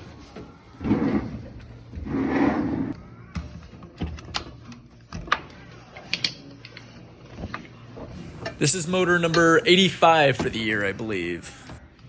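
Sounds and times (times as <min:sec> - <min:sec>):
dishwasher scraping rumble: 0:02.0 - 0:03.0.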